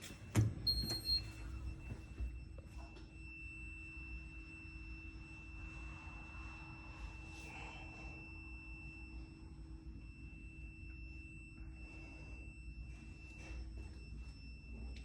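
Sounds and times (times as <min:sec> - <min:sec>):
lift whine and hum: 0:00.0 - 0:15.0.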